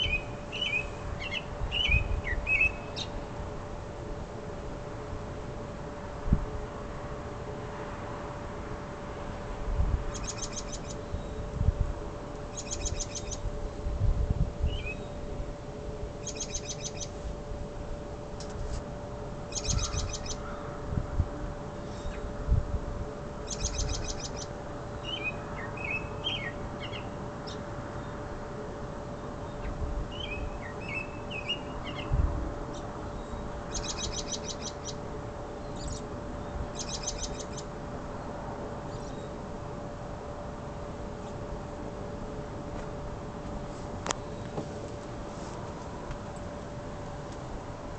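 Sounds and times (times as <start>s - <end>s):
bird high trill: 0.0s - 3.2s, 10.1s - 11.4s, 12.5s - 13.4s, 16.2s - 17.2s, 19.5s - 20.7s, 23.5s - 27.6s, 33.2s - 35.0s, 36.7s - 37.7s
bird lower chirps: 0.0s - 3.2s, 10.1s - 11.4s, 12.5s - 13.4s, 14.7s - 15.2s, 16.2s - 17.1s, 19.5s - 20.4s, 23.5s - 27.6s, 29.4s - 32.1s, 33.2s - 35.0s, 36.7s - 37.7s
faint steady hum: 0.0s - 47.9s.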